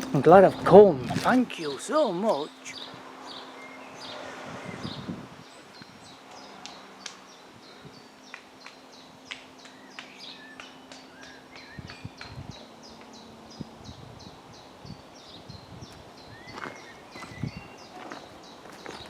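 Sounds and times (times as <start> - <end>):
small birds chirping: 0.0 - 19.0.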